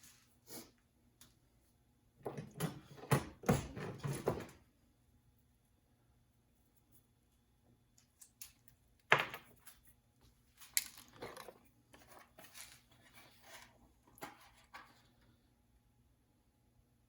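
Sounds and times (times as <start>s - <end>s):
tools scraping and rustling: 9.3s - 15.2s.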